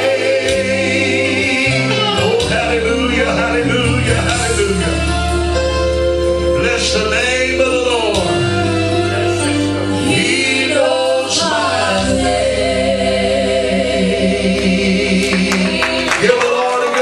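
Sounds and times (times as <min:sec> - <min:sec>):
instrumental backing music: 0:00.0 - 0:17.0
woman singing gospel: 0:01.2 - 0:03.0.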